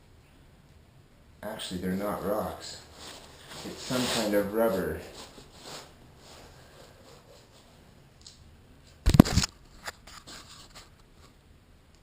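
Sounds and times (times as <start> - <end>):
faint small clicks: 8.2 - 8.4.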